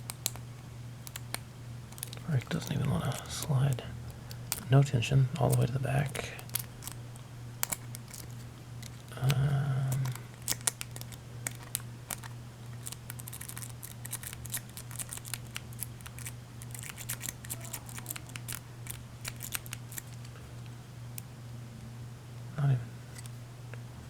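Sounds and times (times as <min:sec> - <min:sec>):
person humming: 0:09.1 - 0:10.2, 0:17.4 - 0:18.5.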